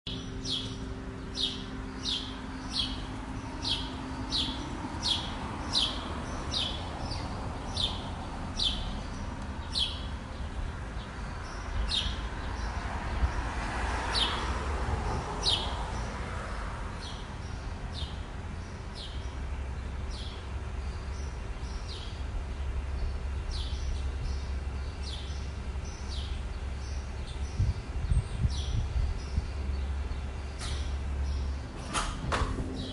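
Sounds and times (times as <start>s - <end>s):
small bird chirping: 0.1s - 12.8s, 20.1s - 31.6s
low steady rumble: 0.1s - 13.5s, 14.6s - 32.9s.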